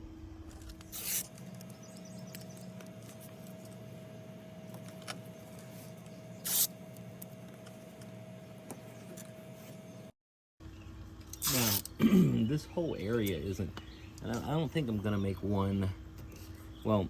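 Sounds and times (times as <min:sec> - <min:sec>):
steady low hum: 0:00.0 - 0:17.0
masking tape pulled off roll: 0:00.7 - 0:01.4, 0:11.3 - 0:11.9.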